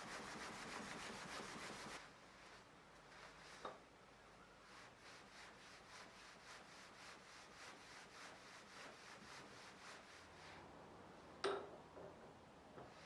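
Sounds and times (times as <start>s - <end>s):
plane blade rubbing on whetstone: 0.0s - 2.0s, 4.7s - 10.6s.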